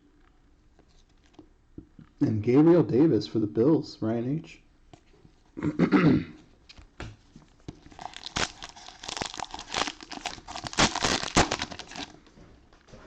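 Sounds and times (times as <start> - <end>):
cellophane wrapper crinkling and tearing: 7.5 - 12.3.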